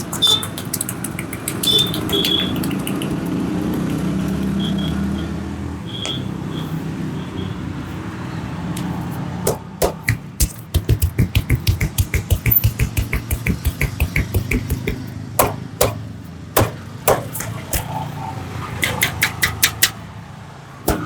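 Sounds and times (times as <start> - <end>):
sharp hand claps: 0.0 - 4.1, 9.5 - 16.0, 18.8 - 20.0
hand slaps: 9.5 - 16.0, 16.6 - 17.9, 18.8 - 20.0
hands striking in massage: 9.5 - 17.9.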